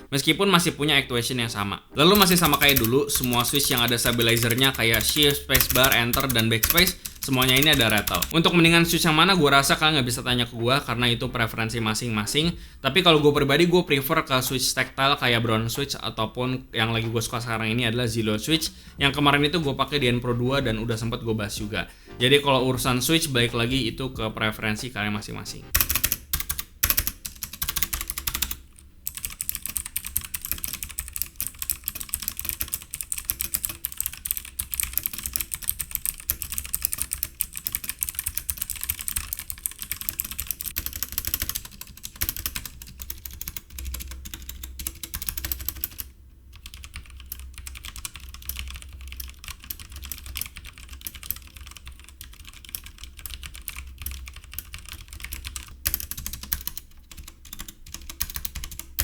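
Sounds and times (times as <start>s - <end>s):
fast typing on mechanical keyboard: 2.0s - 8.4s, 25.7s - 59.0s.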